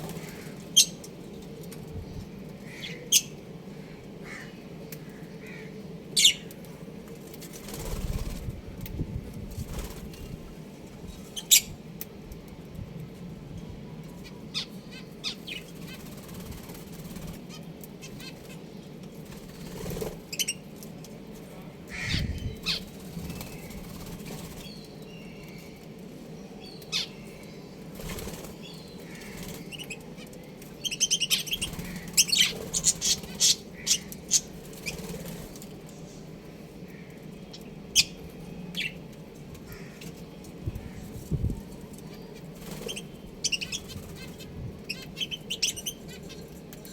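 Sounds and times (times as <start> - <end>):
birds flapping wings: 0.0 - 0.6, 7.1 - 10.6, 15.6 - 20.5, 22.6 - 24.9, 27.9 - 30.0, 31.4 - 35.9, 42.4 - 44.6
steady low hum: 0.0 - 46.9
budgies chirping: 26.6 - 39.0, 39.7 - 46.6.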